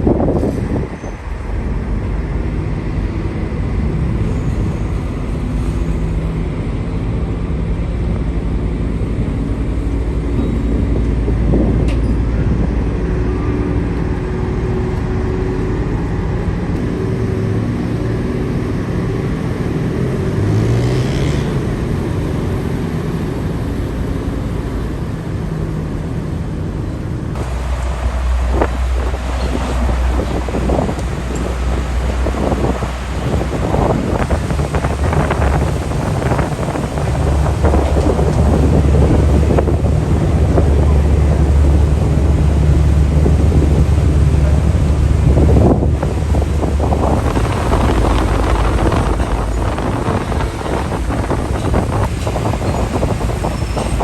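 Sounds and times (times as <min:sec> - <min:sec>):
wind rumble on microphone: 0:00.0 - 0:54.0
motor engine droning: 0:27.4 - 0:54.0.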